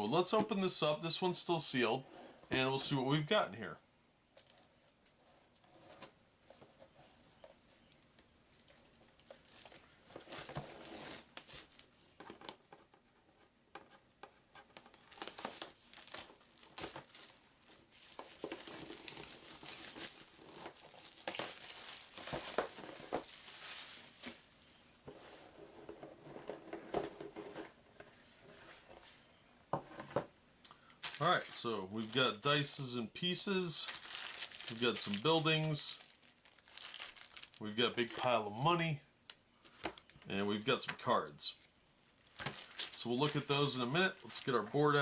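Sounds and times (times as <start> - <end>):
plastic wrap crinkling: 8.5 - 12.6, 14.8 - 24.8, 30.8 - 38.6, 39.6 - 40.3, 42.2 - 45.0.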